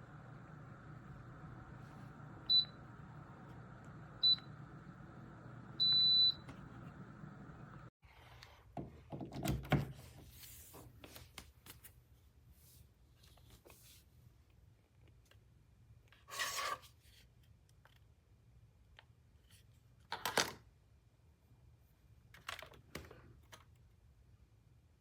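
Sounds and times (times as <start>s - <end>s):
table fan humming: 0.0s - 7.9s
fan control beeps: 2.4s - 3.1s, 4.2s - 4.7s, 5.7s - 6.6s.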